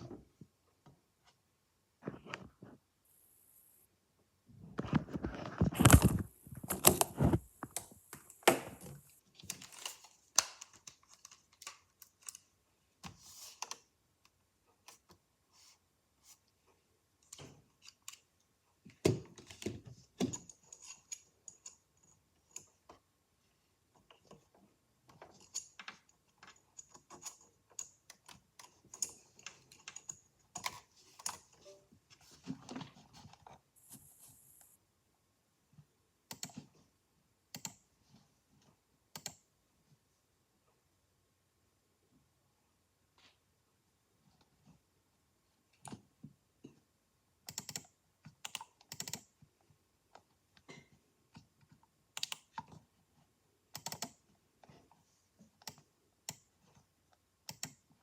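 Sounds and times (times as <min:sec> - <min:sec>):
keyboard typing clicks: 0:47.5 - 0:49.2, 0:53.8 - 0:54.2, 0:57.5 - 0:57.8.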